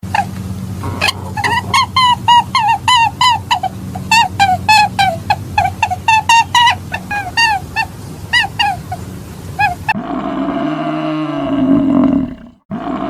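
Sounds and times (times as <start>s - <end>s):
cow bellowing: 0.0s - 4.9s, 9.7s - 13.0s.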